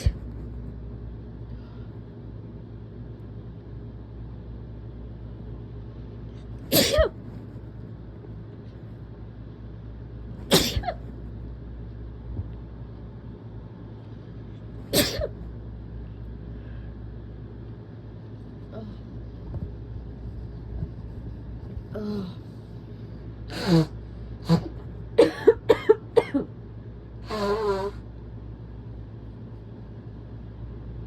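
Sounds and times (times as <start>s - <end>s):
person sneezing: 6.7s - 7.2s, 10.5s - 11.0s, 14.9s - 15.3s.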